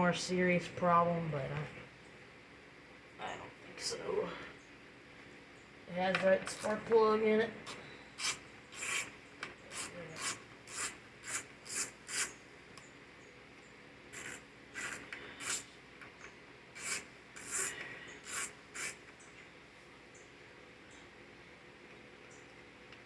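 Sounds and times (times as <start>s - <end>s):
short scraping strokes: 7.7s - 9.1s, 9.7s - 12.4s, 14.1s - 15.7s, 16.8s - 19.0s.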